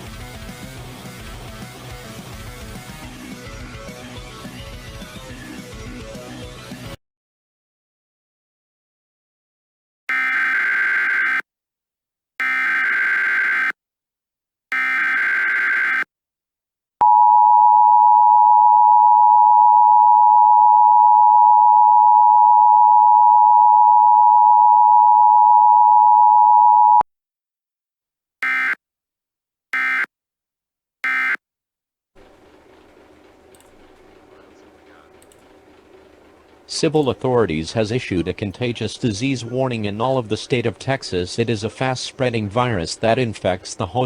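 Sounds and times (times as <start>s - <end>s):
digital data bursts: 14.8s - 16.0s, 29.8s - 30.1s, 31.0s - 31.4s
two-tone attention signal: 28.4s - 28.8s, 29.8s - 30.1s, 31.0s - 31.4s.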